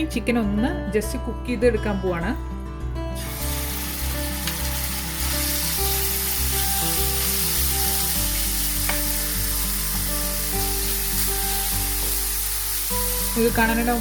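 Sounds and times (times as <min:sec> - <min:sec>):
background music: 0:00.0 - 0:14.0
chicken frying in oil: 0:03.3 - 0:14.0.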